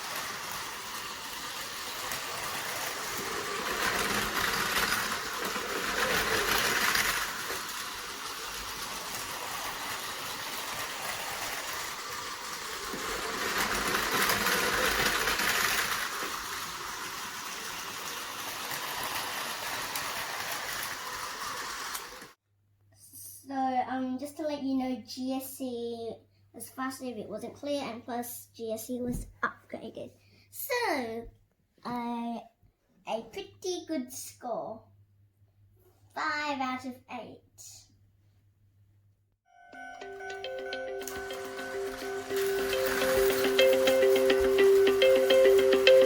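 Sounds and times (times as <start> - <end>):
toy train motor whir: 0.0 - 22.4, 39.8 - 46.0
wheels rattling on plastic track: 0.0 - 22.4, 39.8 - 46.0.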